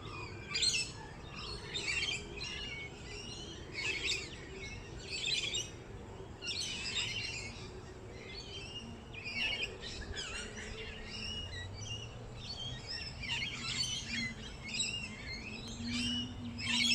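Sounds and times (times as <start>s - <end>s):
songbirds chirping: 0.0s - 16.9s.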